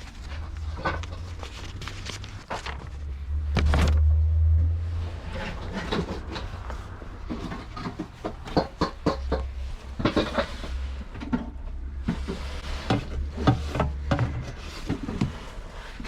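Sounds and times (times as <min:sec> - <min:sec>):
low steady rumble: 0:00.0 - 0:16.0
papers rustling and crinkling: 0:00.0 - 0:16.0.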